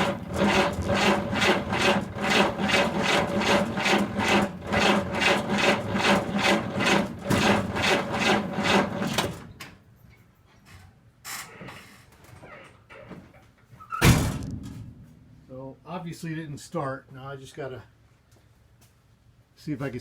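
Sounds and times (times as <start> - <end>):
engine cranking by starter motor: 0.0 - 9.6.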